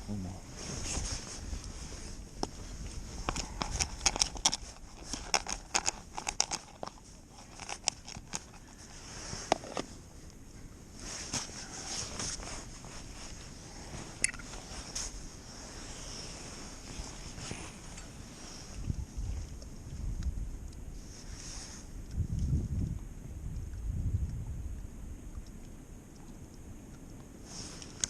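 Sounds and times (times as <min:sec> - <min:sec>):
small clicks and crunches: 0:03.2 - 0:08.9.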